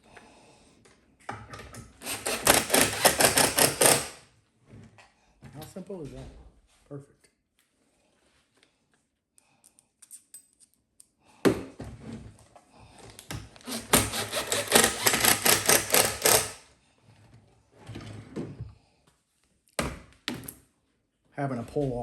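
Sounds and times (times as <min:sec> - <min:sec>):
power driver rattling: 0:13.6 - 0:16.6.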